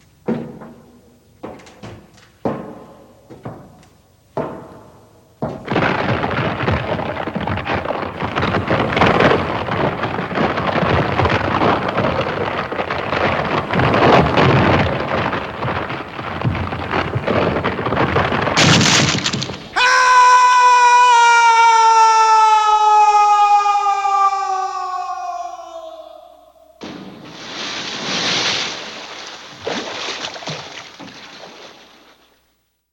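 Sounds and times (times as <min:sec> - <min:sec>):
knock on wooden planks: 0:00.2 - 0:12.0
wood cracking and splintering: 0:05.6 - 0:20.9
long falling scream: 0:19.8 - 0:26.8.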